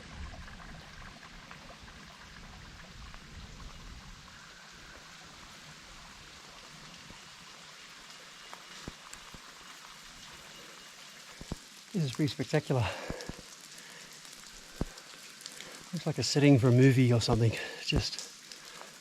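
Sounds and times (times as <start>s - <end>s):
steady rain: 0.0s - 19.0s
raindrops ticking: 6.5s - 19.0s.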